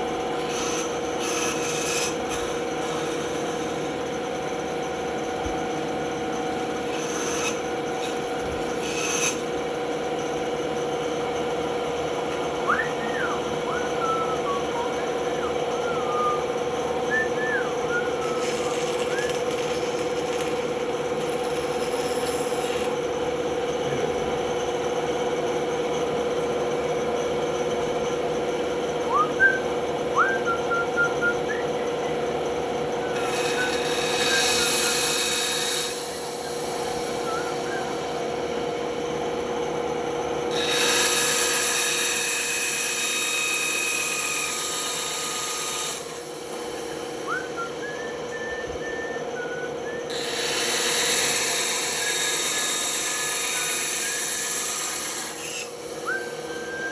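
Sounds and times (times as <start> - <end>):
band saw motor hum: 0.0 - 56.9
saw blade cutting wood: 0.3 - 3.9, 6.4 - 9.8, 12.3 - 23.1, 33.0 - 38.2, 40.5 - 48.0, 49.8 - 56.2.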